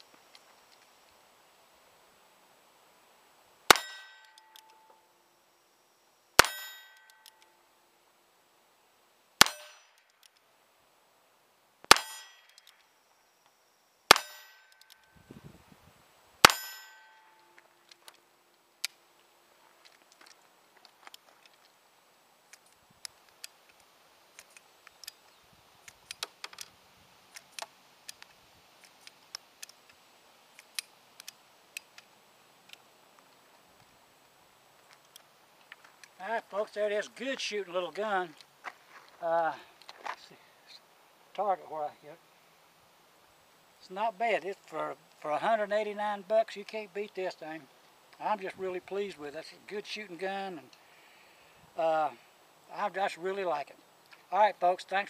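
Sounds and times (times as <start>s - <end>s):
steel target ringing: 3.7s - 5.1s, 6.4s - 7.6s, 9.4s - 10.0s, 11.9s - 12.6s, 14.1s - 15.1s, 16.4s - 17.6s
gun handling clicks: 4.2s - 5.0s, 7.0s - 7.5s, 9.5s - 10.4s, 11.9s - 12.9s, 14.1s - 15.2s, 22.5s - 26.7s, 27.3s - 32.9s
revolver shots: 6.4s - 7.0s, 14.1s - 14.7s.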